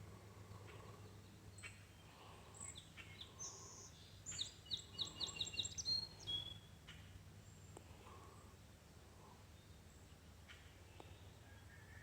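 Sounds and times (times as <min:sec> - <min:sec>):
songbird chirping: 0:00.4 - 0:08.6.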